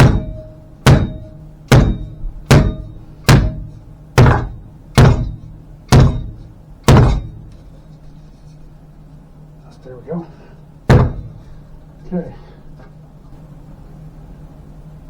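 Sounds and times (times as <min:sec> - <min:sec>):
metal pipe thunking on wood: 0:00.0 - 0:07.7, 0:10.9 - 0:11.6.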